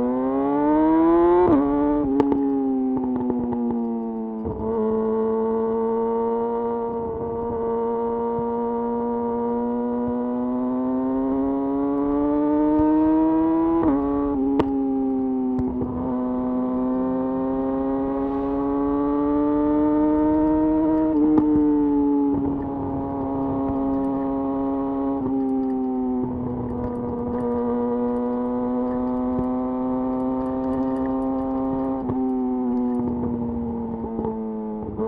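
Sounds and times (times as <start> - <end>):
motorcycle engine cruising: 0.0 - 35.0
gear shift click: 19.6 - 34.4.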